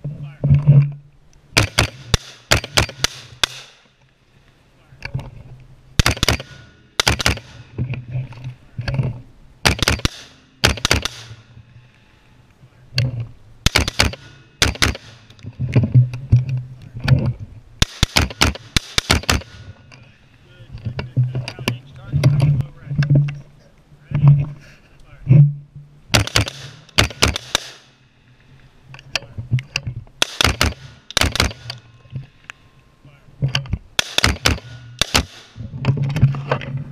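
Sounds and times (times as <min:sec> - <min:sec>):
rifle shots with echo: 0:01.6 - 0:03.8, 0:06.0 - 0:07.6, 0:09.6 - 0:11.4, 0:13.6 - 0:15.2, 0:17.8 - 0:19.7, 0:26.1 - 0:28.0, 0:30.2 - 0:31.8, 0:34.0 - 0:35.6.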